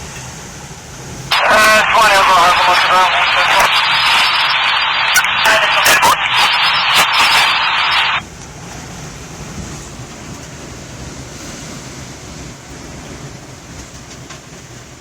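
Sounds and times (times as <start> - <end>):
heavy surf: 1.1 - 15.0
scanner radio hiss: 1.3 - 8.2.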